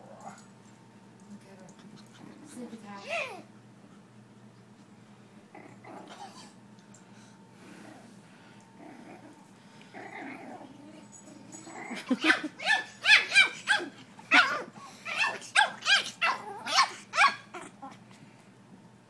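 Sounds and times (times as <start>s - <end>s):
puppy yapping: 12.2s - 17.8s.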